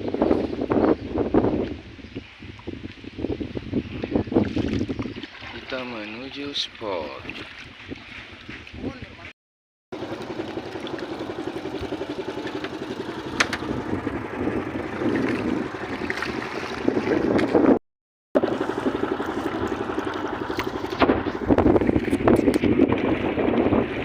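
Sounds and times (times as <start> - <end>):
wind buffeting microphone: 0.0 - 9.3, 11.2 - 17.8, 18.4 - 24.0
boat engine pulsing: 9.9 - 17.8, 18.4 - 24.0.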